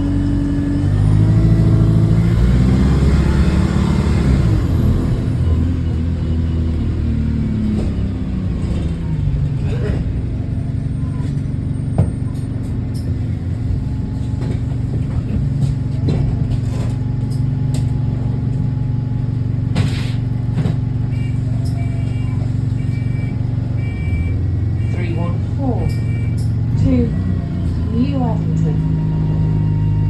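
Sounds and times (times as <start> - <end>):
bus engine running: 0.0 - 30.0
bodywork knocks and rattles: 14.2 - 17.5.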